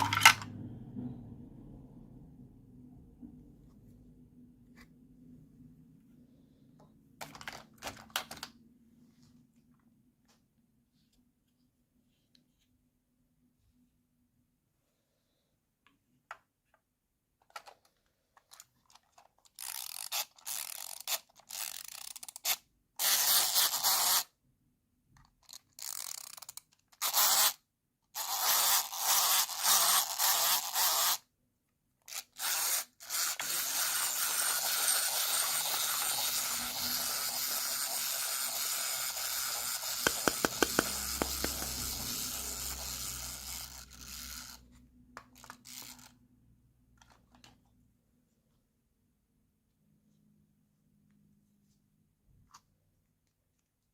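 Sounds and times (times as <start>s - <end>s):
plastic scraping and rubbing: 32.1s - 43.0s.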